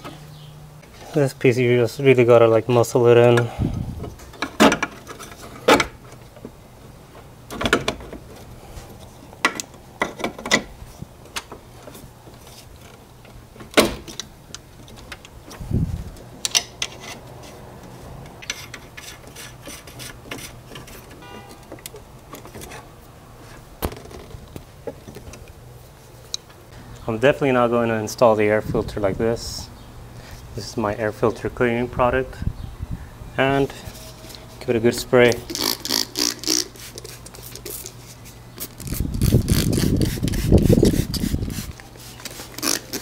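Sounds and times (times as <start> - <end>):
tools clicking and rattling: 18.3 - 22.9.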